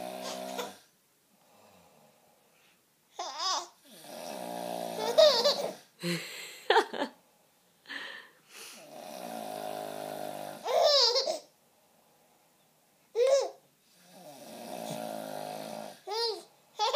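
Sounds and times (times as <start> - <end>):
man snoring: 0.0 - 0.8, 3.8 - 5.2, 8.8 - 10.7, 14.0 - 16.1
baby squealing laugh: 5.0 - 5.8, 10.6 - 11.5, 16.1 - 16.9.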